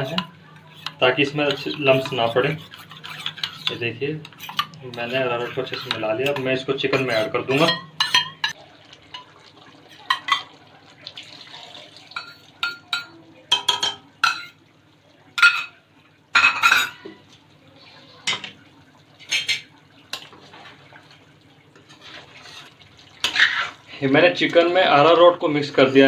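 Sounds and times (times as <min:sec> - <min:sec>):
metal utensil scraping a pan: 0:00.0 - 0:08.6, 0:19.2 - 0:20.8, 0:21.8 - 0:23.9.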